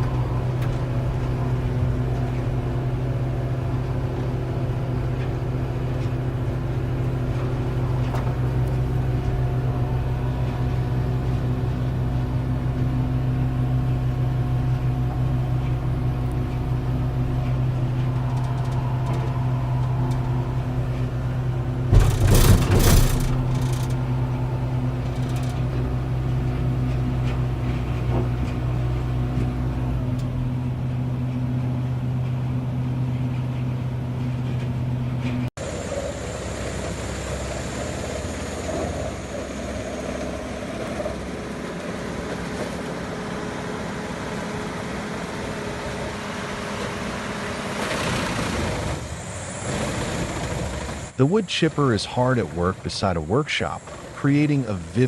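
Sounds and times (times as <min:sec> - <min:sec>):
mobile crusher rumbling: 0:00.0 - 0:55.0
loud crash: 0:18.1 - 0:25.6.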